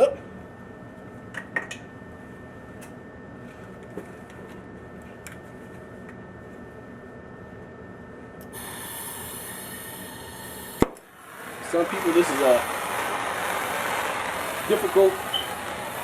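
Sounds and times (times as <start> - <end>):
torch flame hissing: 8.5 - 16.0.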